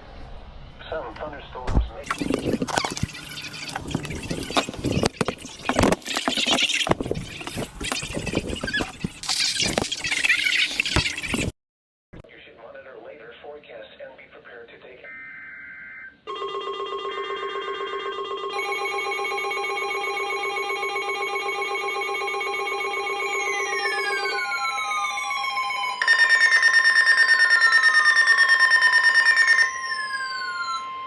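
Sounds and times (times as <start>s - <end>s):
data bursts: 2.0s - 11.5s, 20.4s - 24.7s
electronic alarm tones: 15.0s - 31.0s
falling electronic sweeps: 23.1s - 31.0s.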